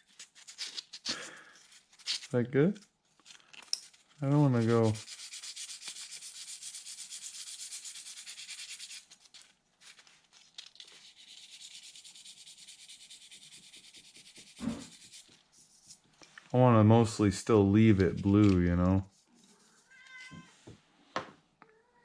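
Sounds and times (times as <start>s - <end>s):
sandpaper rubbing on plastic: 0.0s - 2.3s, 4.2s - 9.5s, 10.8s - 16.0s, 18.0s - 19.9s.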